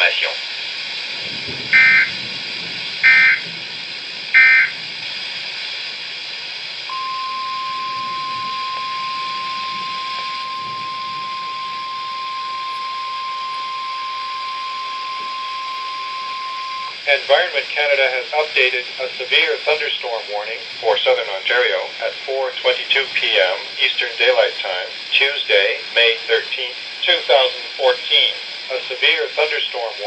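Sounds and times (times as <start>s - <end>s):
radio hiss: 0.0s - 30.0s
digital header bursts: 1.7s - 2.2s, 3.0s - 3.6s, 4.4s - 4.8s
steady warning alarm tone: 1.7s - 2.3s, 3.0s - 3.6s, 4.3s - 4.9s, 6.9s - 17.1s.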